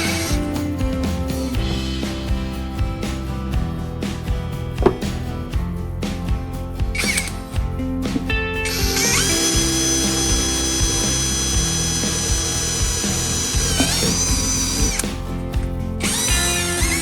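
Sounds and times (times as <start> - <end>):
background music: 0.0 - 17.0
power tool motor whining: 9.0 - 15.0, 16.0 - 17.0.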